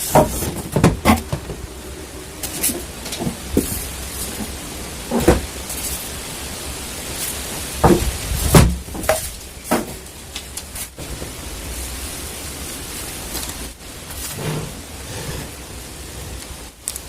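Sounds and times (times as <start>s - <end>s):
objects knocking and clattering: 0.0s - 1.7s, 7.8s - 10.0s
steady hiss: 0.0s - 17.0s.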